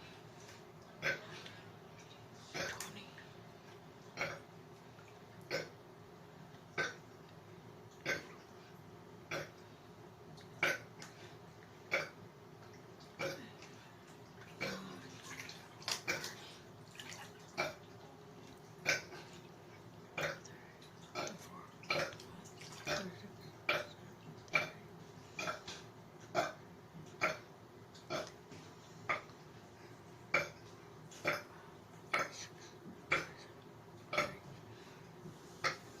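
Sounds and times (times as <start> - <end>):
person burping: 8.1 - 8.3, 14.6 - 15.1, 22.9 - 23.9.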